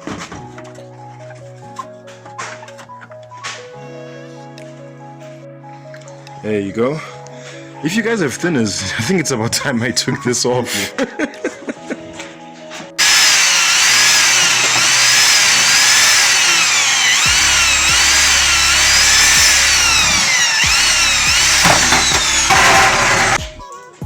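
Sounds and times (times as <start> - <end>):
electric drill drilling plastic: 13.0 - 23.4.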